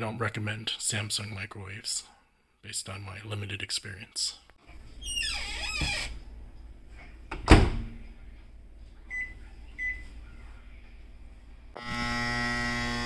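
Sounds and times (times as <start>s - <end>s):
microwave loud steady buzz: 11.7s - 13.0s.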